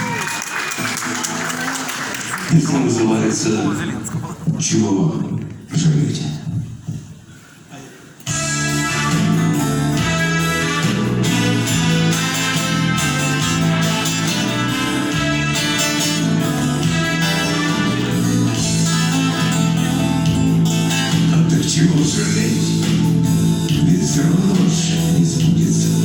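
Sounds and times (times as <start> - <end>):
guitar-led instrumental music: 8.3 - 26.0.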